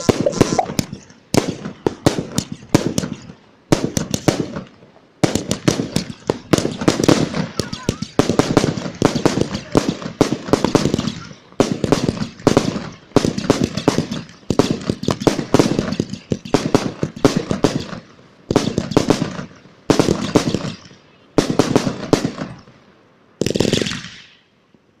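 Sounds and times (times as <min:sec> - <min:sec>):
firework hissing: 0:00.0 - 0:04.6
fireworks bangs and crackles: 0:00.0 - 0:24.5.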